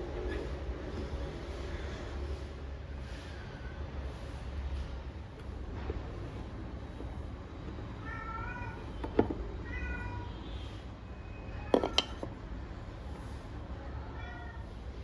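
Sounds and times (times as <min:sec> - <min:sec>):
cat meowing: 0:08.0 - 0:09.0, 0:09.6 - 0:10.5, 0:13.9 - 0:14.8.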